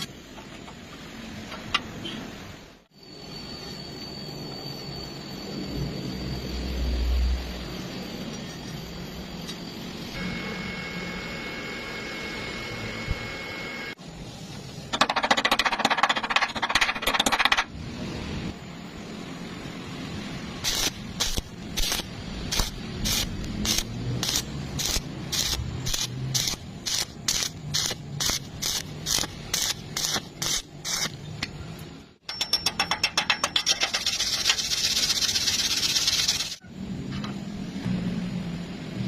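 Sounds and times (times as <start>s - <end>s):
welding arc hissing: 20.3s - 31.5s, 33.8s - 36.6s.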